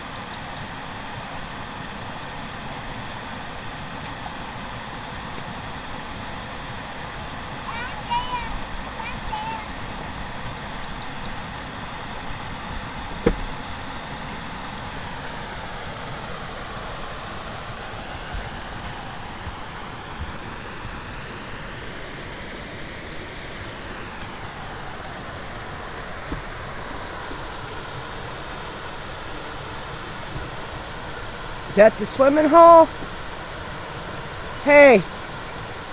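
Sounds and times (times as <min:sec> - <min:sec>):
road and engine noise in car: 0:00.0 - 0:35.9
sharp knock: 0:13.2 - 0:13.5.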